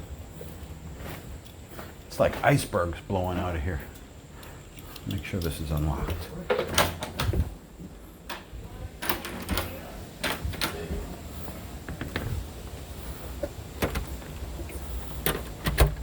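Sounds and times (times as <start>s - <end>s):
steady low hum: 0.0s - 16.0s
door latch clicks and knocks: 6.5s - 7.4s, 15.2s - 16.0s.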